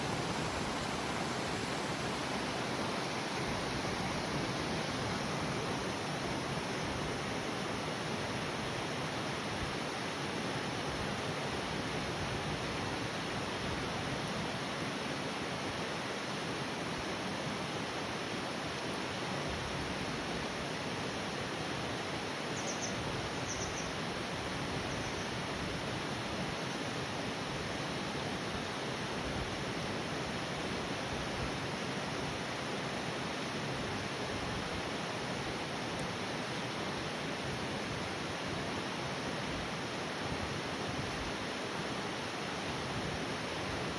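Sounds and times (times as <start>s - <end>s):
waterfall rushing: 0.0s - 6.6s.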